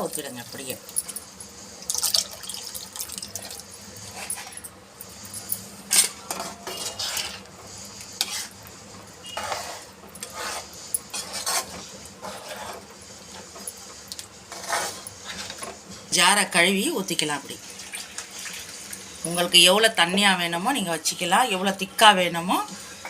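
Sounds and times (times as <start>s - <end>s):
metal ladle scraping a pan: 5.9s - 7.5s, 8.2s - 8.6s, 9.2s - 13.6s, 14.5s - 15.8s.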